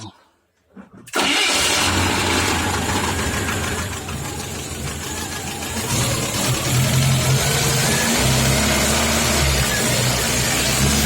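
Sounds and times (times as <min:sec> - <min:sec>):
man talking: 0:00.0 - 0:00.3
vehicle engine revving: 0:01.2 - 0:11.0.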